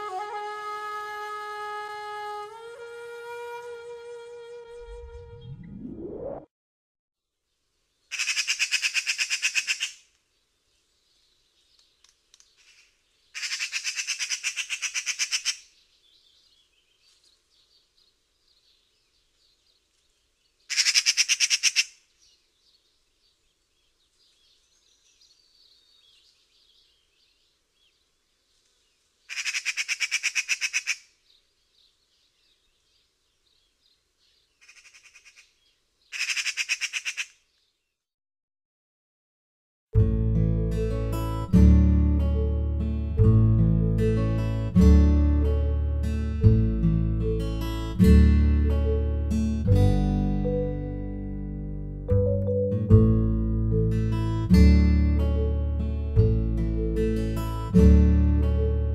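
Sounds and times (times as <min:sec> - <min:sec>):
magpie chattering: 0:08.1 - 0:10.0, 0:13.4 - 0:15.7, 0:20.7 - 0:21.9, 0:29.3 - 0:31.0, 0:34.6 - 0:35.5, 0:36.1 - 0:37.4.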